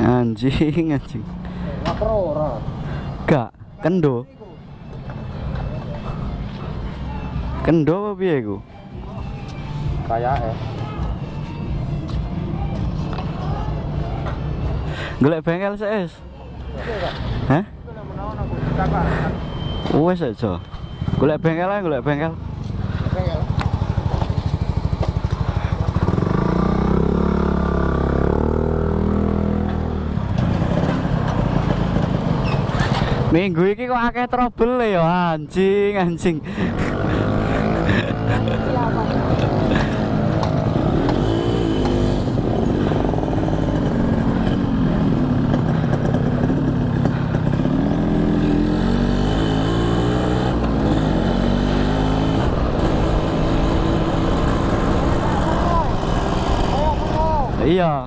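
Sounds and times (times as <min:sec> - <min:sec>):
motorcycle engine revving: 0:20.9 - 0:33.3, 0:36.5 - 0:58.0.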